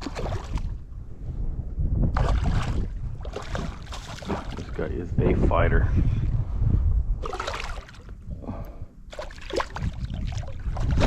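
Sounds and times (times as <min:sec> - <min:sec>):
water splashing and sloshing: 0:00.0 - 0:01.0, 0:02.0 - 0:05.0, 0:07.2 - 0:11.0
wind rumble on microphone: 0:00.0 - 0:11.0.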